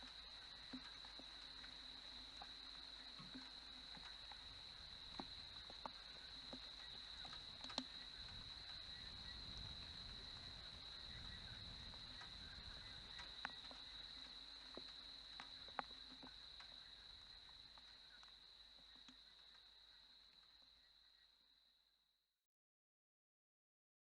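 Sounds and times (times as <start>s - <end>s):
insects trilling: 0.0s - 21.7s.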